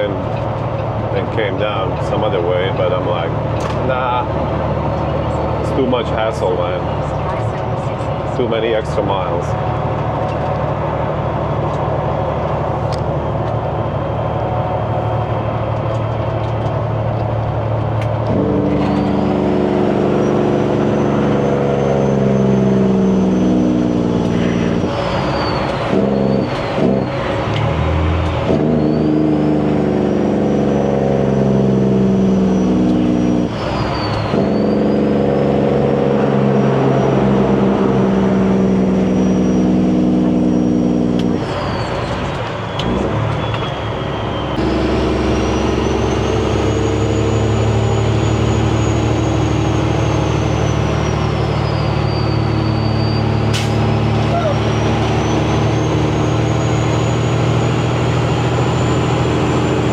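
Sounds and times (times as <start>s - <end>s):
truck diesel engine accelerating: 0.0s - 59.9s
turbo whistle: 38.6s - 59.9s.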